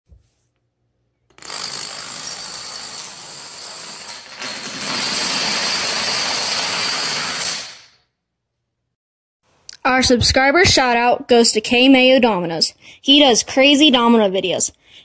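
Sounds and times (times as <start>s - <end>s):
marbles rolling on a track: 1.3s - 8.0s.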